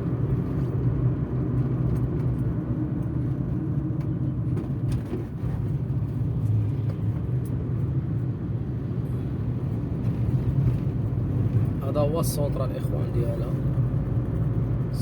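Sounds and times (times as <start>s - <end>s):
engine and road rumble: 0.0s - 15.0s.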